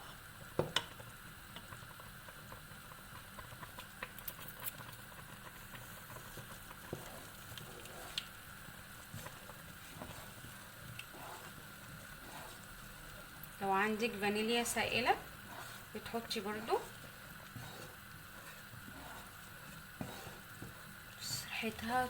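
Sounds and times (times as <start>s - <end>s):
jam bubbling in a pot: 0.0s - 22.0s
small clicks and ticks: 2.5s - 6.8s.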